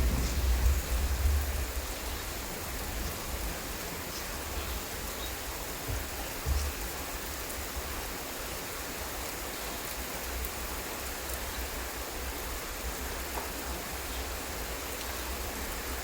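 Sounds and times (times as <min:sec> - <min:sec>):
low rumble: 0:00.0 - 0:03.6
rain falling: 0:00.0 - 0:16.0.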